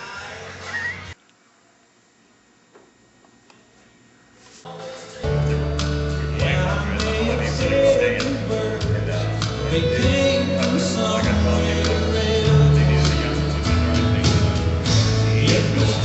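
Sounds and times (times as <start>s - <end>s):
guitar: 4.6s - 16.0s
live country-rock band: 4.7s - 16.0s
person singing: 4.7s - 16.0s
bass notes: 5.2s - 16.0s.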